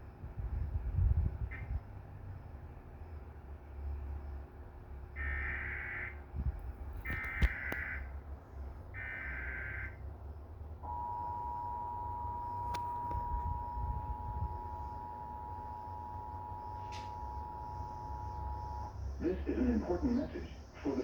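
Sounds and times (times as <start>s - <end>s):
low hum: 10.4s - 21.0s
two-tone attention signal: 10.8s - 19.0s
buzzy data bursts: 12.6s - 21.0s.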